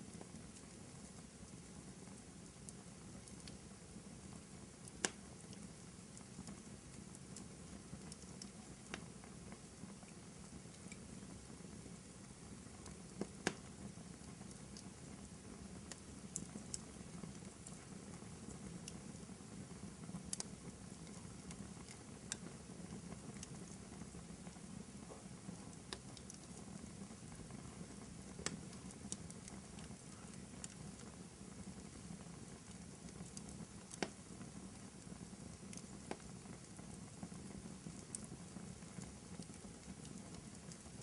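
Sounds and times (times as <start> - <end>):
pops and snaps of burning wood: 0.0 - 3.6, 4.3 - 12.1, 12.7 - 41.0
fire crackling: 0.0 - 41.0.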